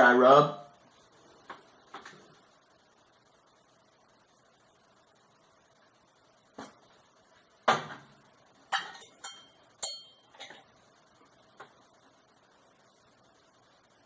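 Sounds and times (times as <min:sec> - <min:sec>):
dishes and utensils clinking: 0:08.7 - 0:10.7.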